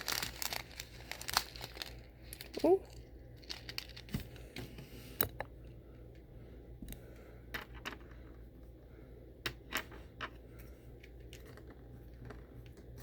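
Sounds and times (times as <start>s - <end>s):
bag and slime clicks and rustles: 0.0s - 4.4s.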